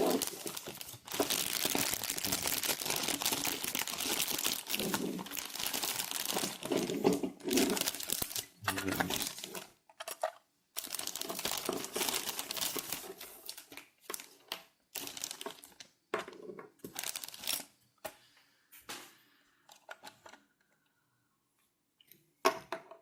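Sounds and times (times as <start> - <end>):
plastic packaging crinkling: 0.0 - 16.0, 16.8 - 17.7.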